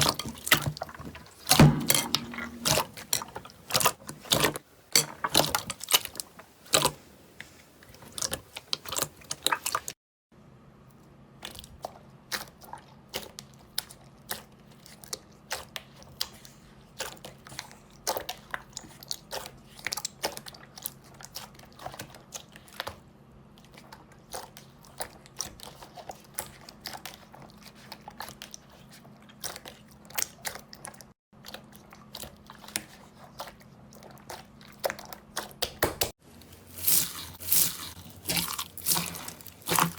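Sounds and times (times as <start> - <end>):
slime crackling and crunching: 36.3 - 39.9.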